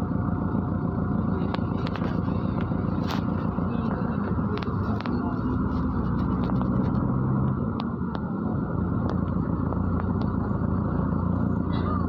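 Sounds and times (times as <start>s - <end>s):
bus diesel engine drone: 0.0s - 12.0s
rattles and clicks from bus body: 0.0s - 12.0s
road noise: 0.0s - 12.0s.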